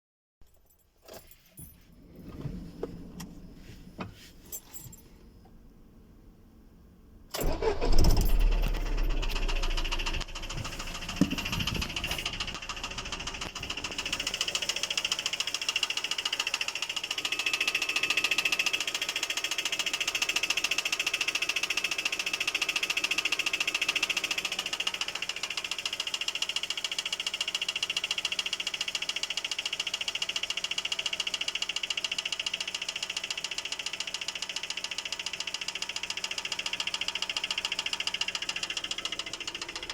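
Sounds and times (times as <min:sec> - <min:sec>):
car engine starting and idling: 0:05.1 - 0:39.9
engine knocking: 0:08.4 - 0:39.9.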